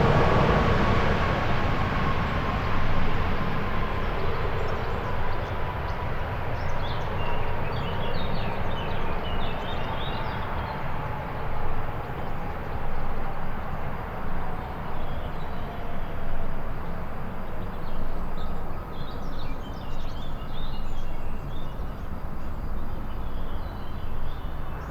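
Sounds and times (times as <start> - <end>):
jet engines spooling down: 0.0 - 5.6.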